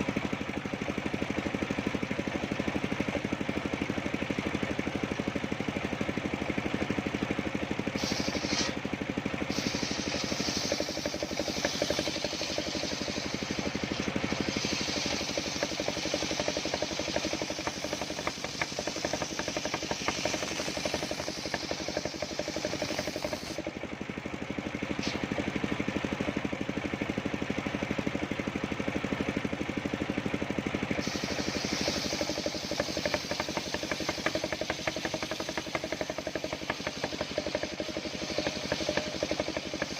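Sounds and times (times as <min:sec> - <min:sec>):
sawmill engine running: 0:00.0 - 0:39.9
high hiss: 0:08.0 - 0:08.8, 0:09.5 - 0:23.6, 0:31.0 - 0:39.9.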